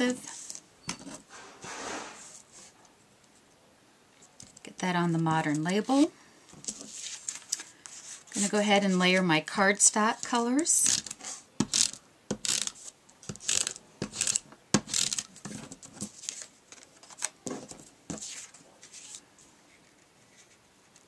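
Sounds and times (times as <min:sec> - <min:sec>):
paper rustling and sliding: 0:01.3 - 0:02.8, 0:06.6 - 0:08.5, 0:12.6 - 0:21.0.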